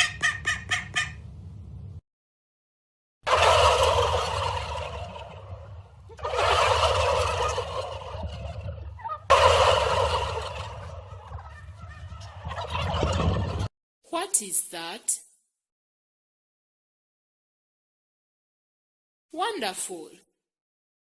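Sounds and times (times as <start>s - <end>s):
turkey gobbling: 0.0s - 1.2s, 3.3s - 13.7s.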